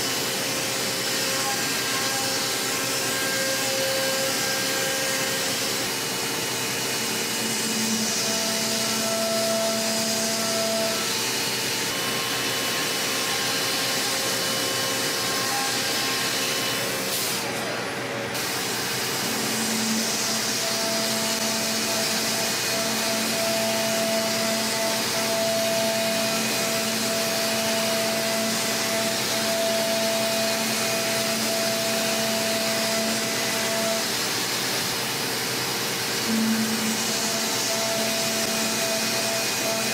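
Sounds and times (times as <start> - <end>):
milling machine whirring: 0.0 - 39.9
high pitched cutting tone: 36.2 - 39.9.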